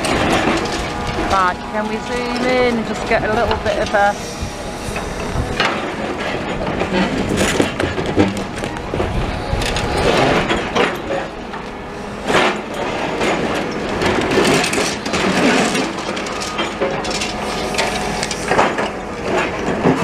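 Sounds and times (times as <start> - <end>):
rubble and timber crushing: 5.4 - 20.0.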